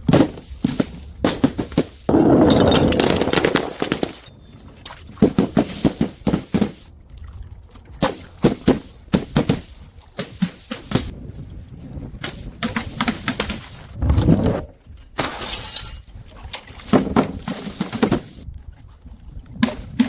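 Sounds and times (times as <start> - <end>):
objects crushing and cracking: 2.1 - 4.3.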